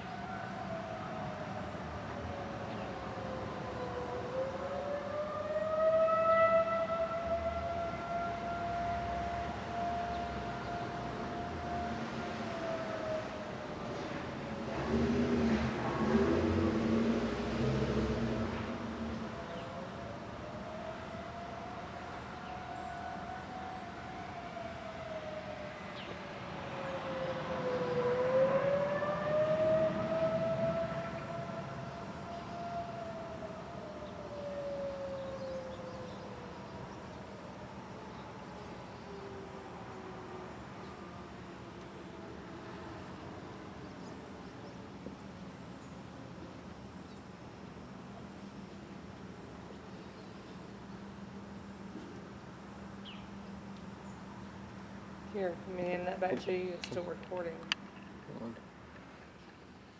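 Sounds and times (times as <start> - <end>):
distant warning siren wailing: 0.0 - 58.8
low outdoor background hum: 0.0 - 59.9.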